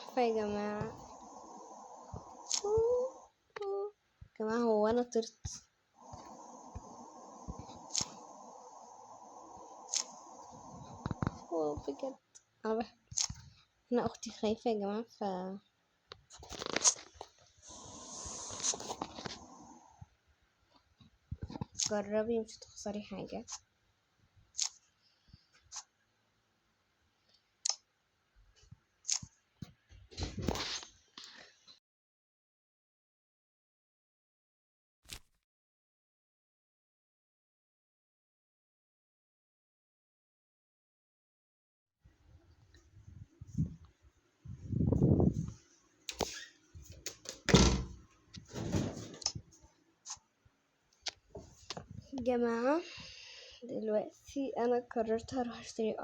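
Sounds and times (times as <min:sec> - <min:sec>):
short rustling thuds: 0:47.4 - 0:49.5.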